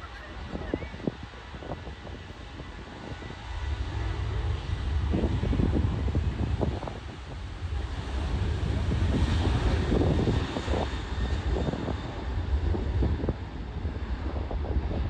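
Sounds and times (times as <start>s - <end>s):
jet engines rumbling: 0.0s - 15.0s
wind buffeting microphone: 0.0s - 15.0s.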